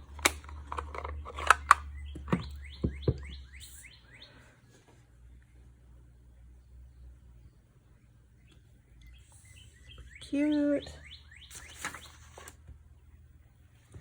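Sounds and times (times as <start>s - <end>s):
craft supplies clicking: 0.1s - 2.4s
bird chirping: 0.9s - 12.4s.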